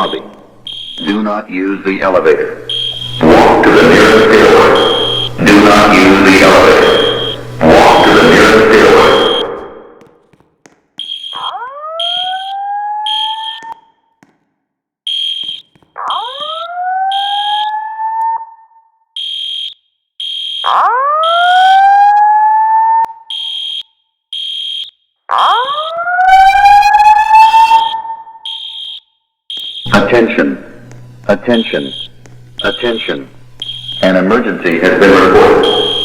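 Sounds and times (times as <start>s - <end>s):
high-pitched alarm beeps: 0.0s - 1.3s, 2.6s - 9.7s, 11.0s - 14.0s, 15.1s - 17.8s, 19.2s - 21.9s, 23.3s - 25.0s, 27.2s - 30.3s, 31.0s - 36.0s
rising whoop alarm tone: 25.4s - 28.7s.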